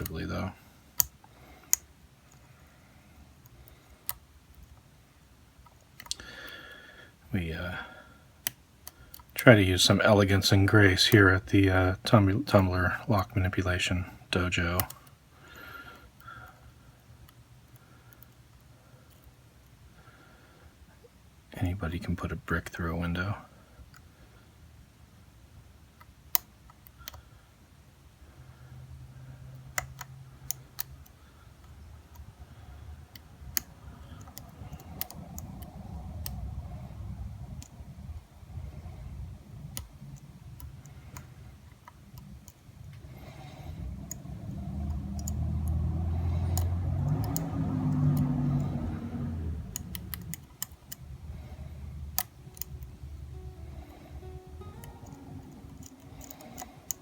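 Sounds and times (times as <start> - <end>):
lock picks clicking: 33.0 - 36.5, 39.6 - 49.0, 49.7 - 51.5, 52.1 - 57.0
low rumble: 42.8 - 55.8.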